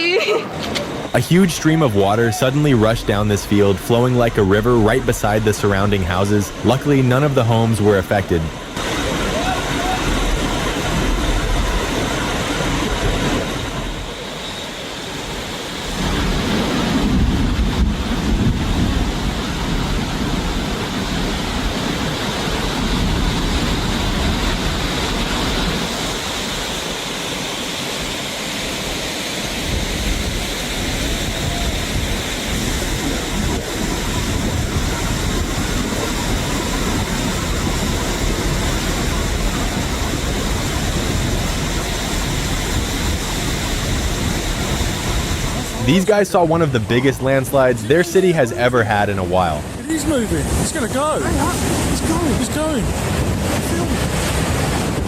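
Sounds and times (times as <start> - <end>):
floodwater rushing: 0.0 - 55.0
wind on microphone: 15.4 - 26.9, 28.7 - 47.2, 49.6 - 55.0.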